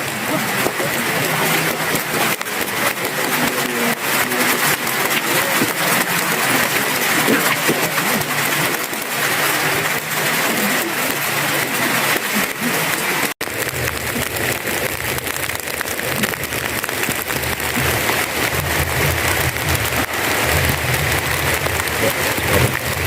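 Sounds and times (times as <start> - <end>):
heavy rain hissing: 0.0 - 23.0.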